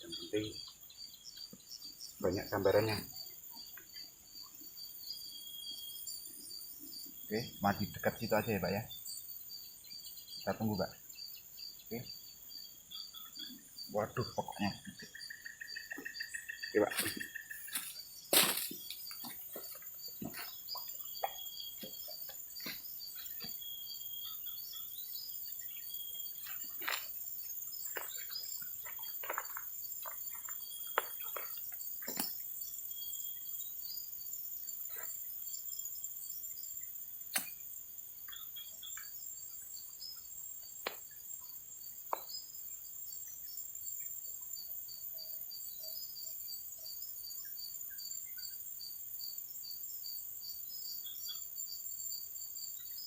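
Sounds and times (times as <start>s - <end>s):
insects chirring: 0.0s - 53.0s
sharp clicks: 37.3s - 37.6s.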